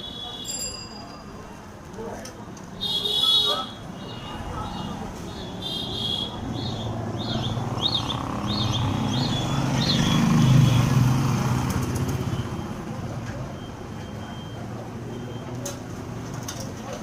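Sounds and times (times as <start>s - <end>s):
motor vehicle passing: 6.4s - 13.1s
bird chirping: 6.5s - 10.3s.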